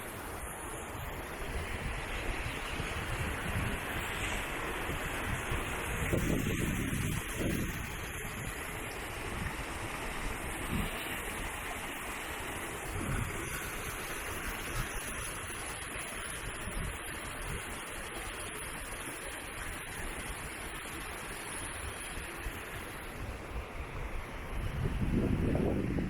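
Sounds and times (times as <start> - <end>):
flowing water rushing: 0.0 - 26.0
wind buffeting microphone: 1.0 - 11.7, 12.6 - 17.8, 22.0 - 26.0.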